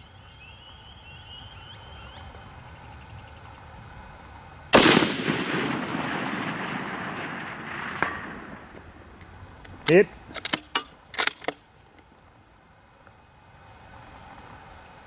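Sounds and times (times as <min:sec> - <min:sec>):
rifle shot with echo: 0:04.7 - 0:11.3.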